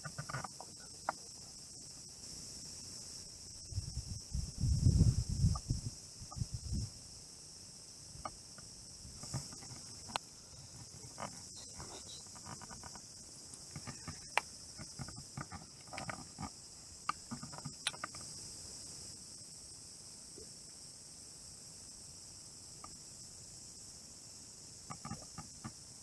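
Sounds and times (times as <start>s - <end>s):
faint clicks and knocks: 0.0s - 1.3s, 8.2s - 18.3s, 24.9s - 25.8s
high-pitched insect chorus: 0.0s - 26.0s.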